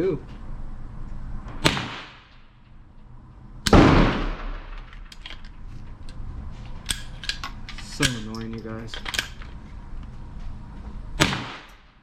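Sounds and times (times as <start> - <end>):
gunshots: 1.5 - 2.3, 3.7 - 4.9, 11.2 - 11.8.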